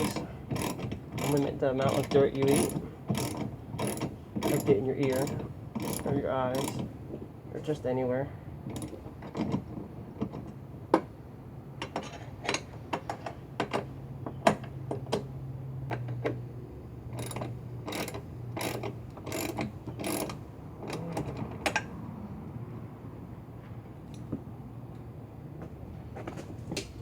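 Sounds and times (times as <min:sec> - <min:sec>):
ratchet wrench clicking: 0:00.0 - 0:06.9, 0:17.2 - 0:21.1.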